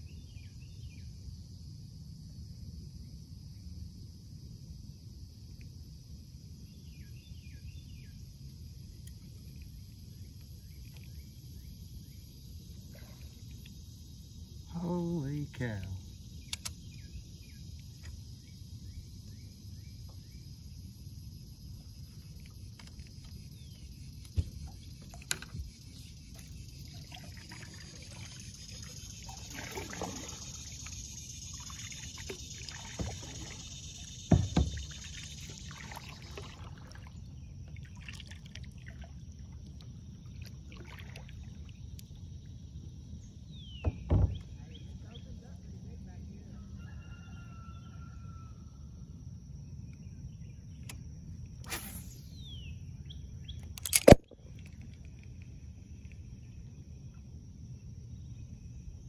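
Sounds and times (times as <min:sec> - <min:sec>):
water trickling and dripping: 0:24.2 - 0:42.6
sharp knocks on kayak: 0:34.3 - 0:34.8, 0:43.8 - 0:44.4
steady high hiss: 0:51.6 - 0:52.6.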